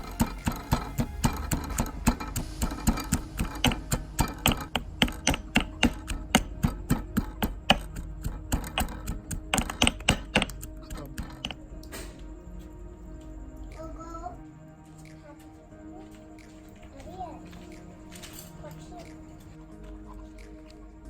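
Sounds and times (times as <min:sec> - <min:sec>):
rapid sharp knocking: 0:00.0 - 0:11.6
background music: 0:00.0 - 0:21.0.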